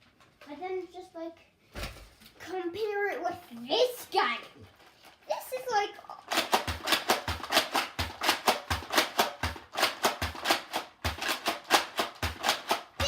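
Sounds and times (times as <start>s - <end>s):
loud music with drum beat: 6.3s - 13.0s.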